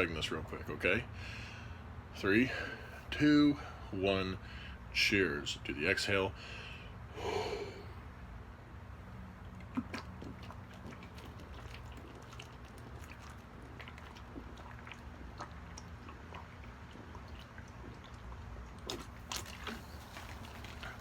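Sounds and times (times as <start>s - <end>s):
person gulping and swallowing: 9.6s - 21.0s.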